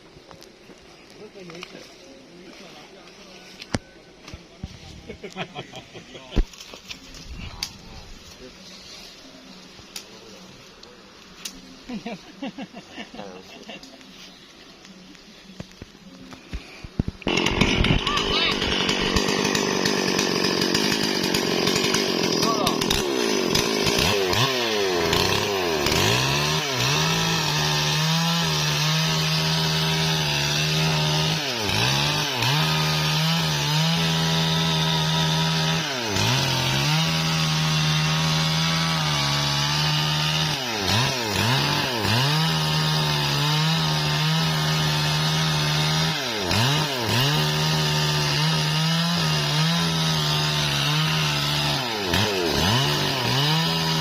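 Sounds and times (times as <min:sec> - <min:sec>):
chainsaw cutting wood: 0:16.4 - 0:54.0.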